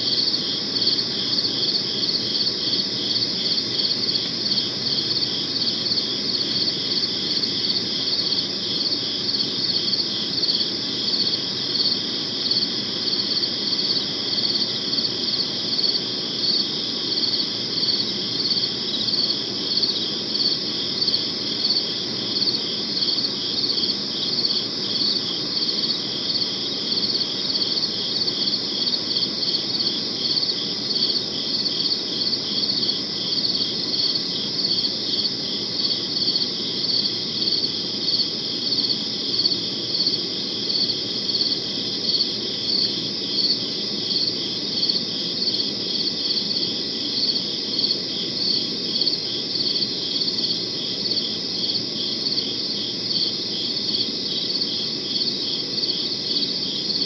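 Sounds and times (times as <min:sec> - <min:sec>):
crickets chirping: 0:00.0 - 0:57.0
low night ambience hum: 0:00.0 - 0:57.0.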